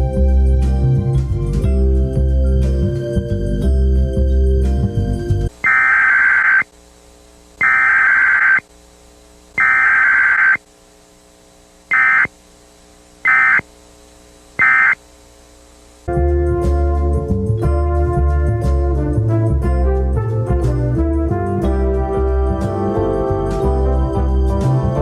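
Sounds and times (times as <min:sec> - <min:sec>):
buzzy two-tone modem warble: 0:05.6 - 0:06.7, 0:07.6 - 0:08.7, 0:09.5 - 0:10.7, 0:11.9 - 0:12.5, 0:13.2 - 0:13.8, 0:14.4 - 0:15.1
short electronic blips: 0:05.6 - 0:06.7, 0:07.6 - 0:08.7, 0:09.6 - 0:10.6, 0:11.9 - 0:12.4, 0:13.2 - 0:13.7, 0:14.6 - 0:15.0.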